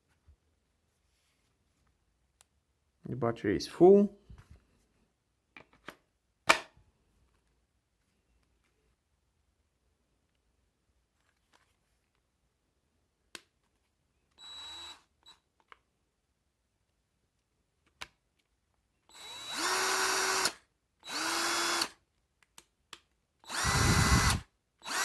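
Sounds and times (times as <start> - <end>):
cordless drill whining: 14.3 - 15.4, 19.1 - 22.0, 23.4 - 25.0.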